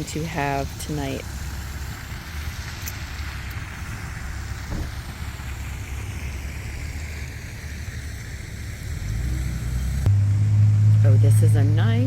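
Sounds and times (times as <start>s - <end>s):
car passing: 3.2s - 12.0s.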